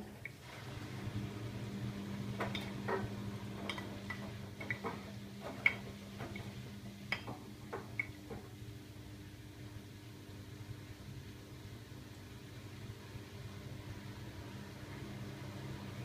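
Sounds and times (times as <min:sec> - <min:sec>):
washing machine motor hum: 0:00.0 - 0:16.0
laundry clinking in drum: 0:02.4 - 0:08.5.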